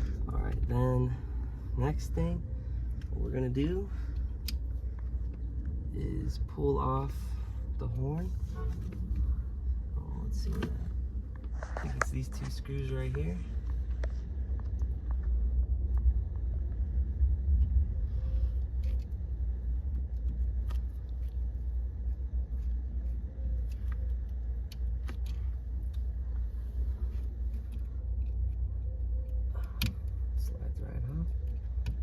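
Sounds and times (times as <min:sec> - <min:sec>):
steady low rumble: 0:00.0 - 0:32.0.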